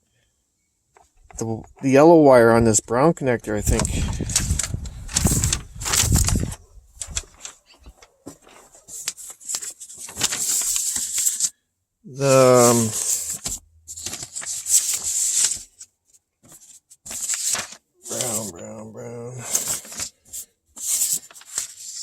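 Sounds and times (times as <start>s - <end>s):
rustling of wiring and connectors: 3.5s - 11.6s.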